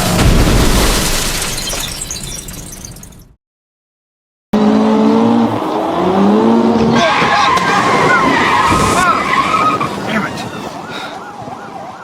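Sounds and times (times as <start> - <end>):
car crash sound effect: 0.0 - 3.4.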